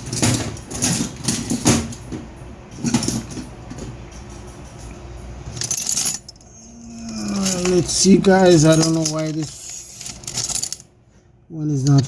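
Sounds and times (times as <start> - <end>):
low steady hum: 0.0 - 12.0
metal parts clinking: 5.5 - 10.9.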